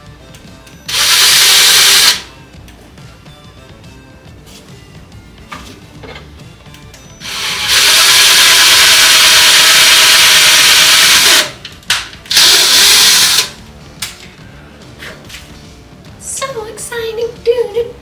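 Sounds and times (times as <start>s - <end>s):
power drill boring holes: 0.8s - 2.3s, 7.1s - 11.6s, 12.3s - 13.6s.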